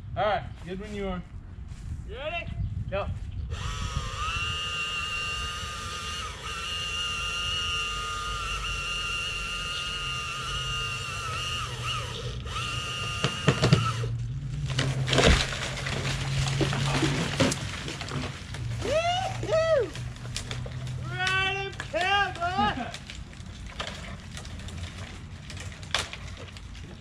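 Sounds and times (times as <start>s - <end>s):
chainsaw cutting wood: 3.5s - 27.0s
branch cracking and crashing: 11.4s - 27.0s.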